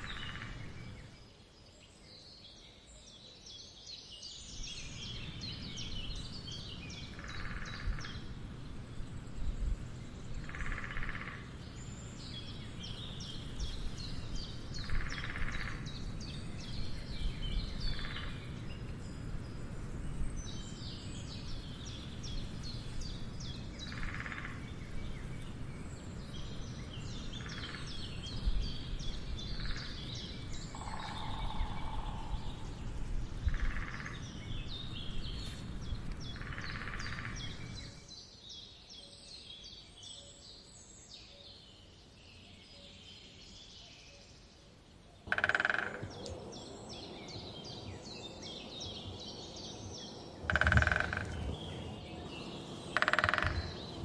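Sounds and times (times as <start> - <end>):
songbirds trilling: 0.0 - 54.0
woodpecker drumming: 30.7 - 32.3, 45.3 - 46.5, 50.4 - 54.0
low outdoor rumble: 45.9 - 54.0.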